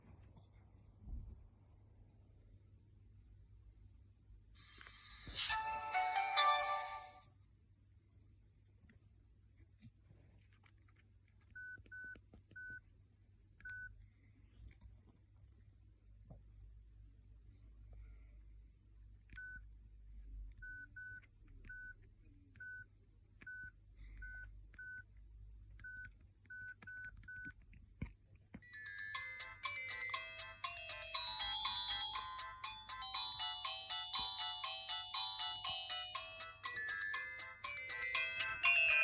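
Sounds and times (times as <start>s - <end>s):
phone ringtone melody: 5.4s - 7.2s, 28.6s - 39.0s.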